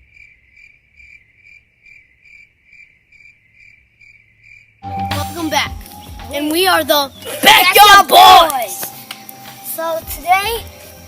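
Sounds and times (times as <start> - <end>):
cricket chirping: 0.0 - 6.4.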